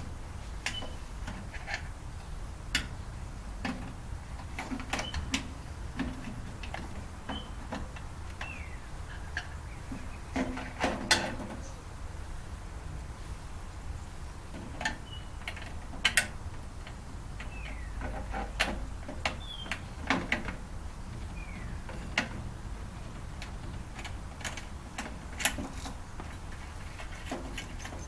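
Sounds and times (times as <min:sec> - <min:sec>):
tools and metal parts clicking: 0:03.6 - 0:09.6, 0:14.8 - 0:20.6, 0:21.8 - 0:28.0.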